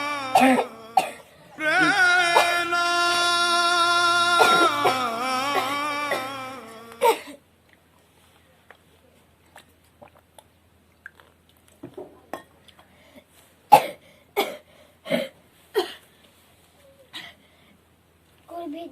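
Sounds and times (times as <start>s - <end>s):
person coughing: 0.0s - 2.9s, 4.4s - 7.4s, 13.7s - 16.0s.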